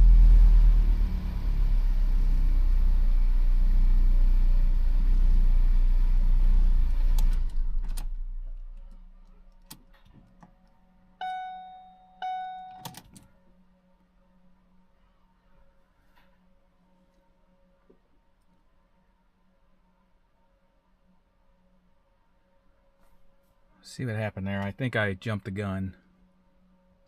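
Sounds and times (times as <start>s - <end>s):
car engine revving: 0.0s - 8.8s
chime tones: 11.2s - 12.8s.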